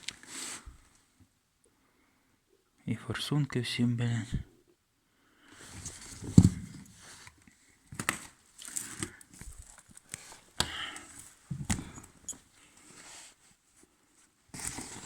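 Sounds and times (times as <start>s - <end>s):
rustling: 5.6s - 15.0s.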